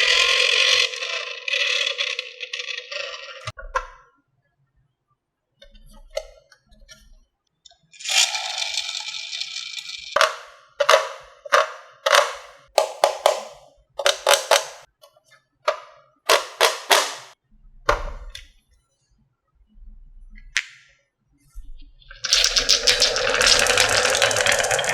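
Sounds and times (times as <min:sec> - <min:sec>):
marbles clacking on wooden track: 0:00.0 - 0:03.5, 0:08.0 - 0:14.9, 0:16.3 - 0:17.4, 0:22.3 - 0:24.9
marbles rolling on wooden track: 0:00.0 - 0:03.5, 0:08.0 - 0:14.9, 0:16.3 - 0:17.4, 0:22.3 - 0:24.9.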